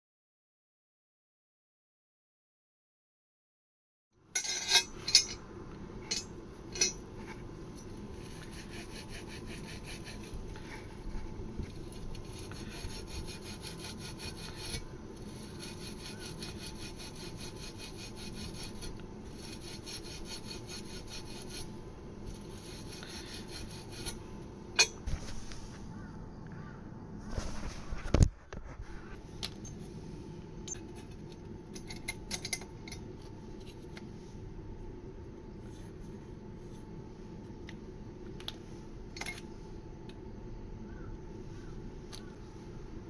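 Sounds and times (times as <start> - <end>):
abrasive scrubbing copper pipe: 8.1 - 24.2.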